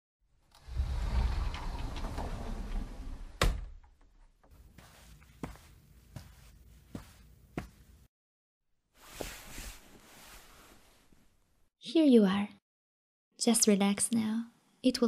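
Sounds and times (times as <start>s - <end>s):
low rumble: 0.5s - 3.4s.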